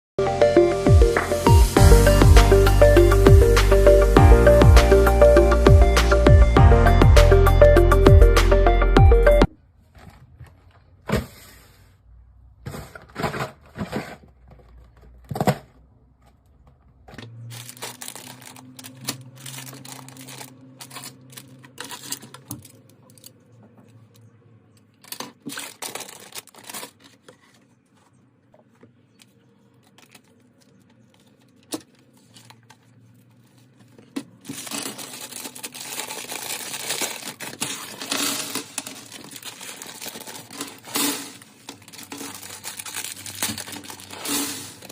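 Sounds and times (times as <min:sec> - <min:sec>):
plastic crinkling and tearing: 0:17.4 - 0:22.7, 0:25.0 - 0:27.8, 0:29.8 - 0:44.9.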